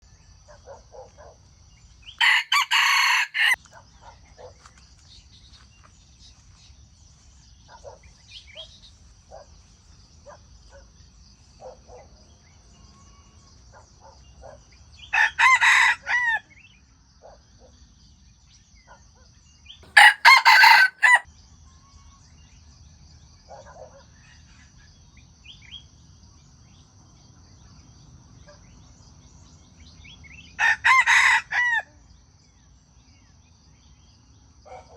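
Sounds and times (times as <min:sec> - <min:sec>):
rooster crowing: 0:02.2 - 0:03.6, 0:15.1 - 0:16.5, 0:19.9 - 0:21.3, 0:30.6 - 0:31.9.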